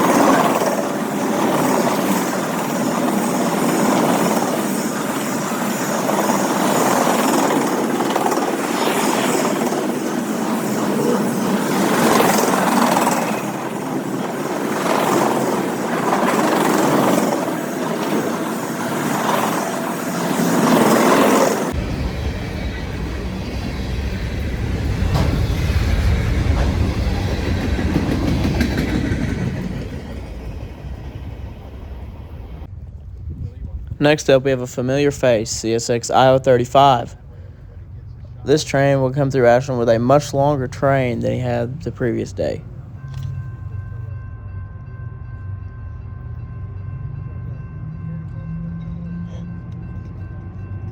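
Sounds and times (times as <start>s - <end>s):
freight train wheels clacking on rails: 0.0s - 31.8s.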